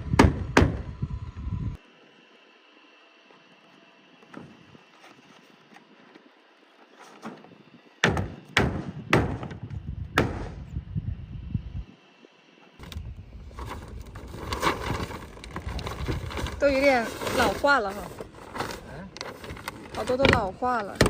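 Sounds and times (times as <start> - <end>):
sharp knocks and thuds: 8.0 - 10.6
rumbling handling noise: 12.8 - 21.0.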